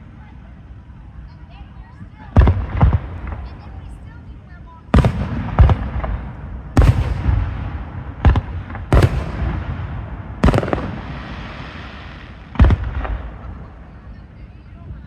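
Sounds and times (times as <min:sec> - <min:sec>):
fireworks booming: 0:02.2 - 0:04.0, 0:04.9 - 0:14.0.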